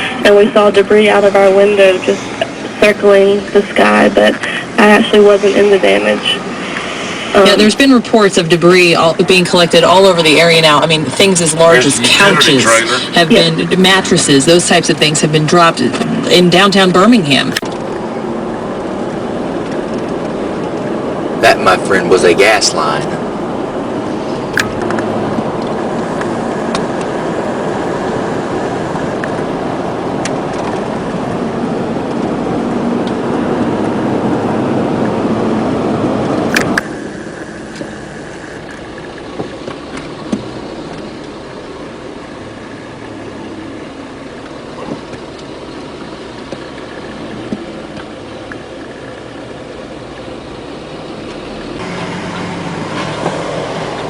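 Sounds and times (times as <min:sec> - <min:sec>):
car engine and road noise: 0:00.0 - 0:54.0.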